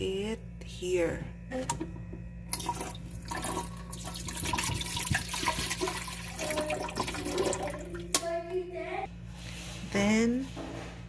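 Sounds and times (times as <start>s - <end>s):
water pouring into a tank: 2.5s - 8.0s.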